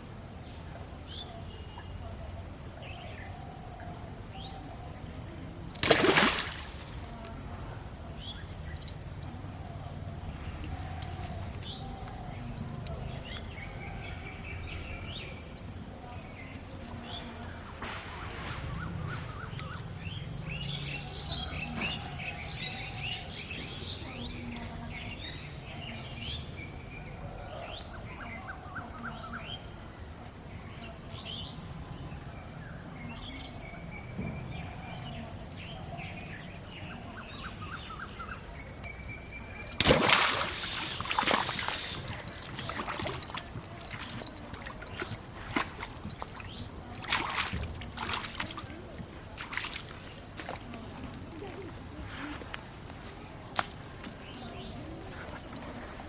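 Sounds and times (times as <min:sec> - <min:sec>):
low steady outdoor rumble: 0:00.0 - 0:56.0
birds chirping and calling: 0:33.0 - 0:50.8.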